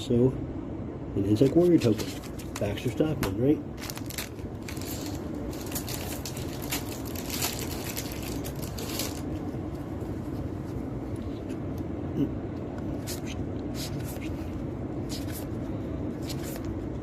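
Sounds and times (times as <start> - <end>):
foil rustling and crinkling: 3.8 - 9.4.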